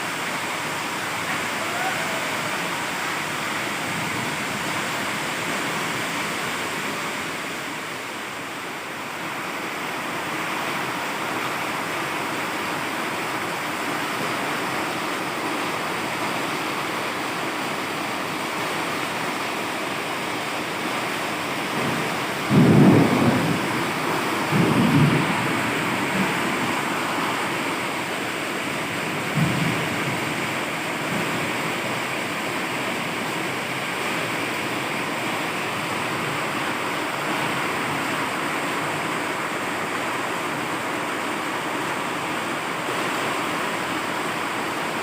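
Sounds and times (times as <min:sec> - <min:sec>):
heavy rain pouring: 0:00.0 - 0:45.0
low thunder rumble: 0:21.7 - 0:28.1, 0:29.1 - 0:30.4.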